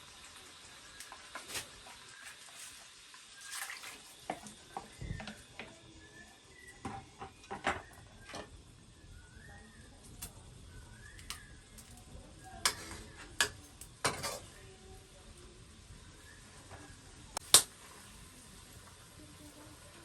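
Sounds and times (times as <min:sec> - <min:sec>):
utensils knocking against pots: 0:06.7 - 0:08.6, 0:12.6 - 0:14.5.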